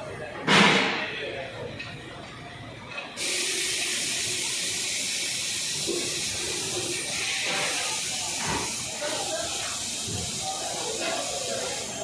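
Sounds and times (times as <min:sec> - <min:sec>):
steady loud hiss: 0:03.1 - 0:12.0.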